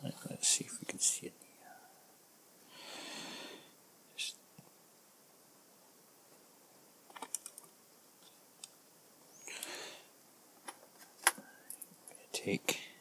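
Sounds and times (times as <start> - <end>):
soft rush of noise: 0.0 - 13.0
plastic parts clicking: 7.1 - 8.8.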